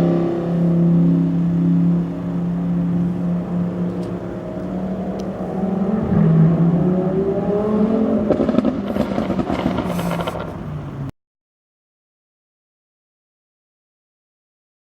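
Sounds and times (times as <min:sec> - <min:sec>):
sports car engine revving: 0:00.0 - 0:11.1
exhaust crackles and pops: 0:08.2 - 0:10.6.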